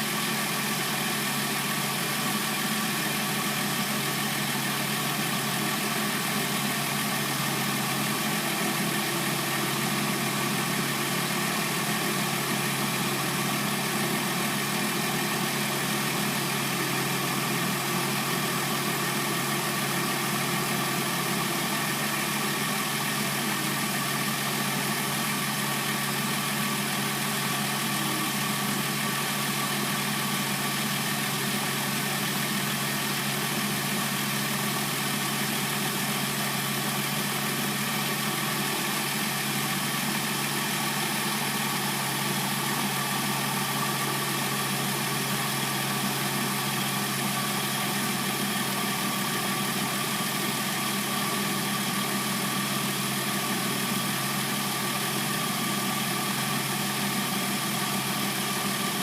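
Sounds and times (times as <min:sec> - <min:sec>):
car engine idling: 0:00.0 - 0:59.0.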